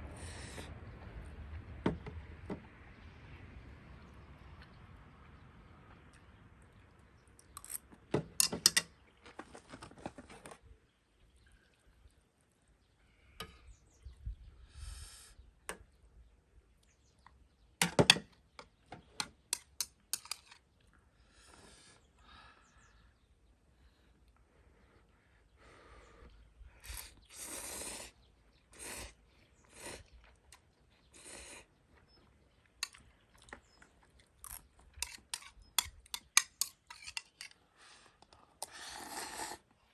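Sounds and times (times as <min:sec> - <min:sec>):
utensils clicking against pot: 0:08.4 - 0:08.9, 0:19.2 - 0:20.6, 0:34.5 - 0:37.5
chewing and slurping noodles: 0:38.6 - 0:39.7.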